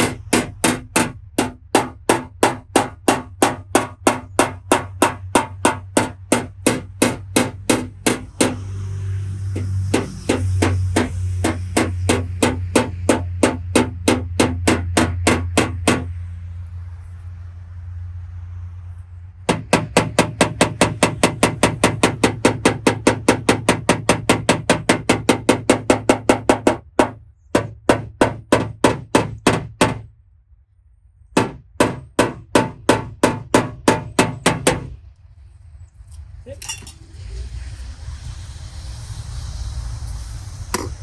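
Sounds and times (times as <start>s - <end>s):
hammer tapping sheet metal: 0.0s - 8.6s, 9.5s - 16.1s, 19.5s - 30.0s, 40.8s - 41.0s.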